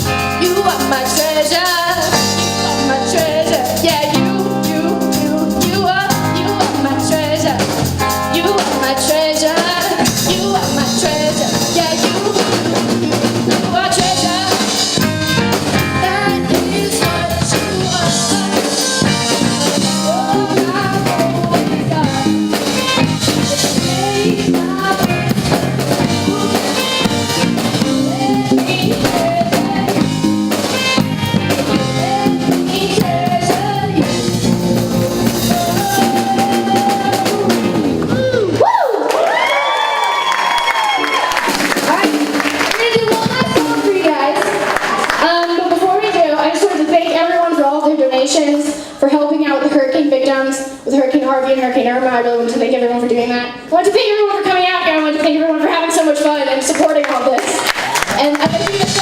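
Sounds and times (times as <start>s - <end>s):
keyboard: 0.0s - 38.6s
drum kit beat: 0.0s - 39.5s, 40.1s - 47.4s, 54.5s - 59.0s
female lead singer: 0.0s - 39.5s, 41.8s - 59.0s
bass guitar: 0.0s - 49.0s, 54.4s - 59.0s
guitar: 0.0s - 59.0s.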